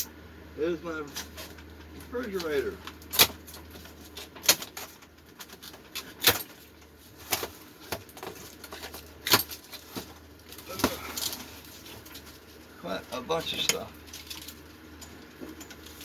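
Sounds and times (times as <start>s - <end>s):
knocks and clunks of items handled: 1.0s - 12.6s, 13.5s - 16.0s.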